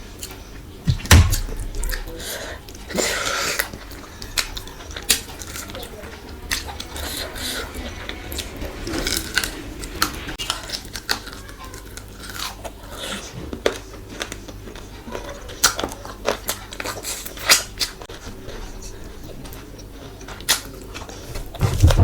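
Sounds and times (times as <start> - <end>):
person chewing and crunching food: 10.4 - 18.2.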